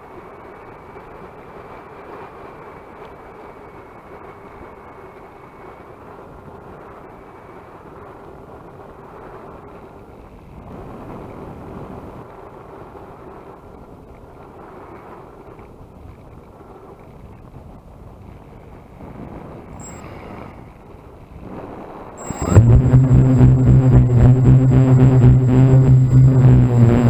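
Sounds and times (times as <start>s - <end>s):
wind noise on microphone: 0.1s - 27.0s
electric motors humming: 22.2s - 27.0s.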